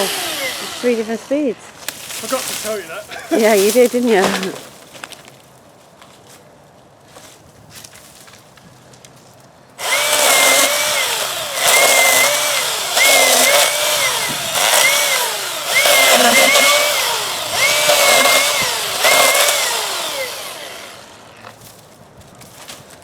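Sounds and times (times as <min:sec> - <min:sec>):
electric chainsaw motor whine: 0:00.0 - 0:01.9, 0:09.8 - 0:21.4.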